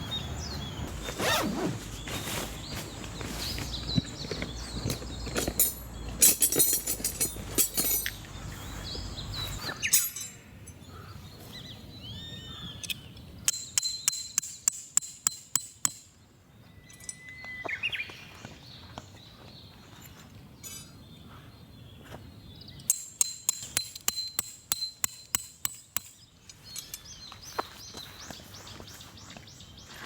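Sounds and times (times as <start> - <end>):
small birds chirping: 0.0 - 30.0
gear rustling and knocking: 0.9 - 8.2.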